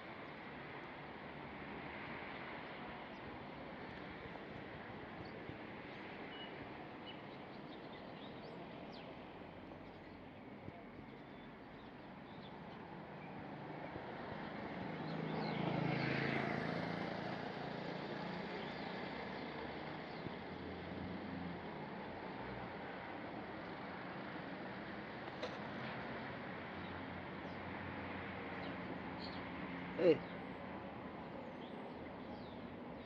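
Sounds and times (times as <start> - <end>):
motor vehicle passing: 14.9 - 20.0.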